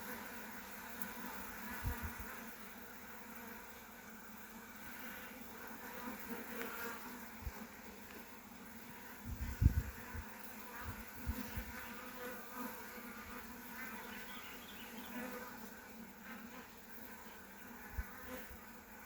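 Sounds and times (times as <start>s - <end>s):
honeybees buzzing: 0.0s - 19.0s.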